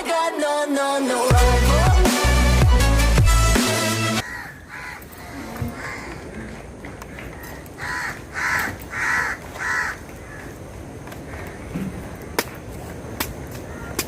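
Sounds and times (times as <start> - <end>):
crow cawing: 4.2 - 10.6, 11.2 - 12.2, 13.6 - 14.0.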